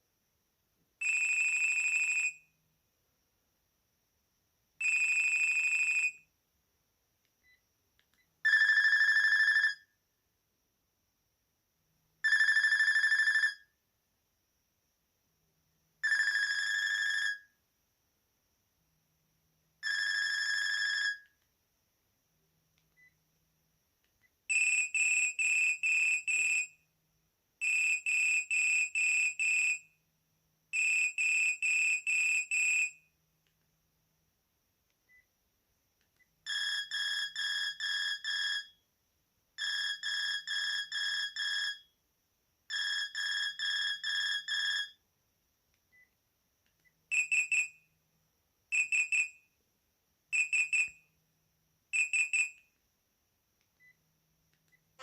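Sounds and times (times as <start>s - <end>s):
phone ringtone beeps: 8.5s - 9.8s, 12.2s - 13.6s, 16.0s - 17.4s, 19.8s - 21.2s, 36.5s - 38.8s, 39.6s - 41.8s, 42.7s - 45.0s, 47.1s - 47.8s, 52.0s - 52.6s.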